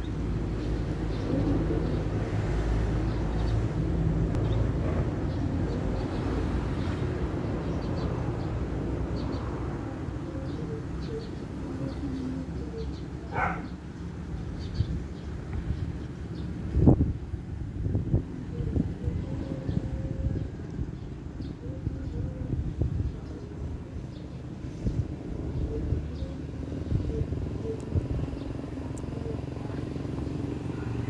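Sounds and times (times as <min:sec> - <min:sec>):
wind buffeting microphone: 0:13.3 - 0:31.0.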